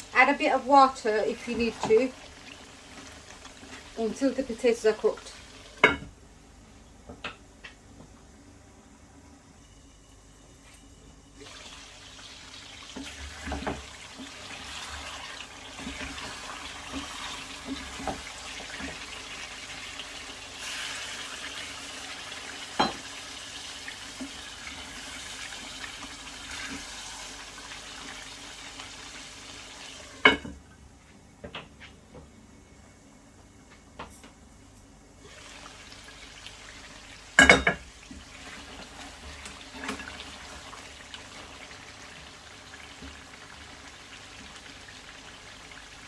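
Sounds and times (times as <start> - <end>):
water running from tap: 11.4 - 26.8.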